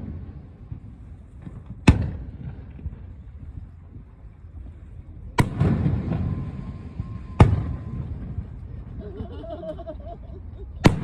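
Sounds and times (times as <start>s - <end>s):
fireworks bangs: 0.0s - 4.1s, 5.3s - 9.0s, 10.8s - 11.0s
rolling rumble: 0.0s - 11.0s.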